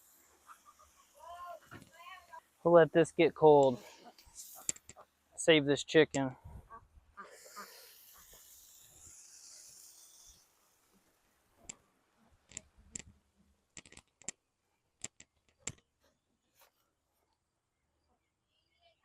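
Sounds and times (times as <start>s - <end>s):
faint hiss: 0.0s - 6.5s, 7.2s - 12.4s
sharp irregular clicks and taps: 13.8s - 14.4s, 15.0s - 15.9s.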